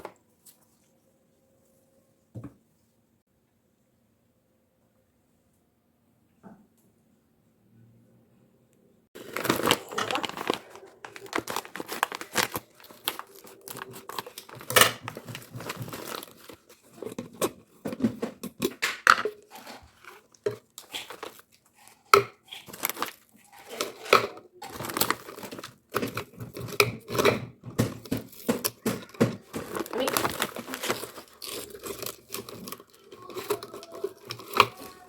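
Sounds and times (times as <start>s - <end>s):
plastic packaging crinkling and tearing: 9.2s - 35.0s.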